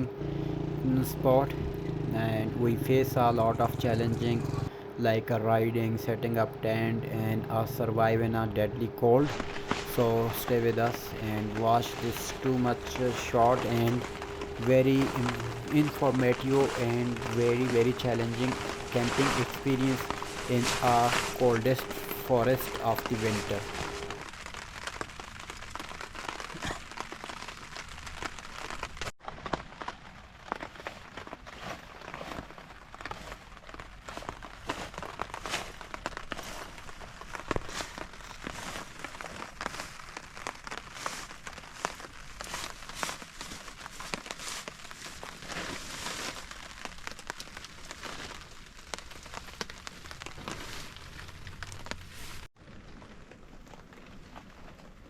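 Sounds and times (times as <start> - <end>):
steady rain falling: 0.0 - 4.7, 5.5 - 30.9
rain drops ticking on a surface: 9.2 - 31.4, 32.2 - 55.0.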